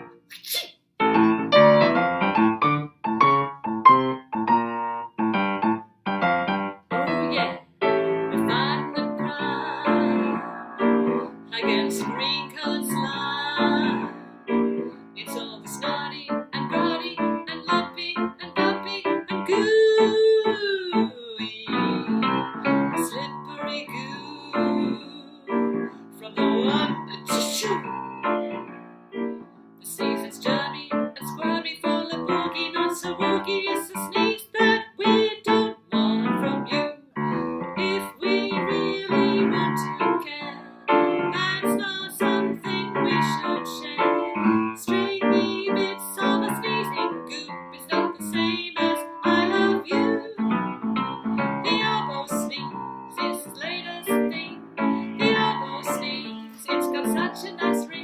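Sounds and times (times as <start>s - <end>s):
piano accompaniment: 0.0s - 0.3s, 1.0s - 58.0s
woman singing: 7.3s - 7.6s, 8.3s - 14.4s, 15.2s - 27.9s, 29.8s - 37.1s, 37.8s - 50.6s, 51.6s - 58.0s.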